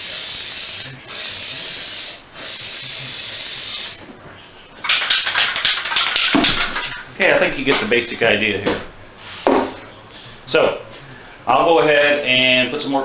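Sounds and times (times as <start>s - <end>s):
spray can hissing: 0.0s - 4.0s, 4.9s - 7.0s
choppy noise: 0.0s - 8.6s.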